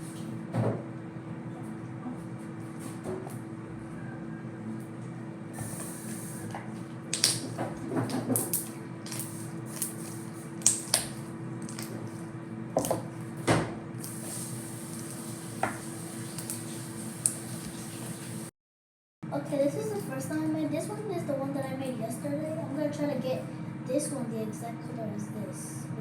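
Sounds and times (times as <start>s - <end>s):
wet slime squelches: 5.6s - 13.3s.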